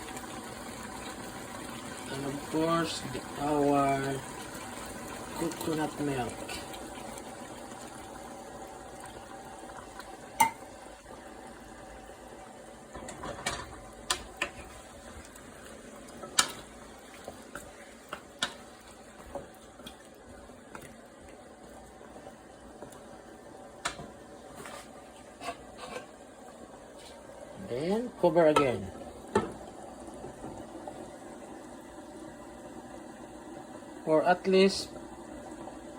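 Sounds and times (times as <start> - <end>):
simmering pot hiss: 0.0 - 35.9
spoon knocking against pot: 10.4 - 10.6.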